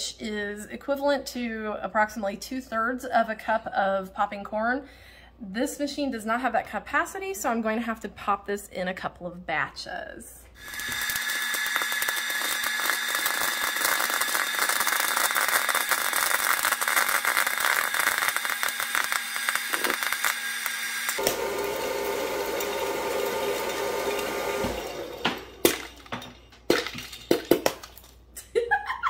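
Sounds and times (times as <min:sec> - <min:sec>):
popcorn popper fan whirring: 0:10.6 - 0:27.6
popcorn kernels popping: 0:10.6 - 0:28.2.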